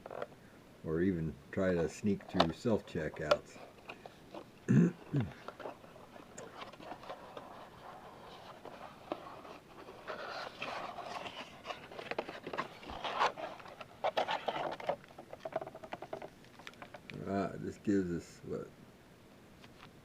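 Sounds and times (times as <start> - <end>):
card box wrapping crinkling: 2.1 - 17.2.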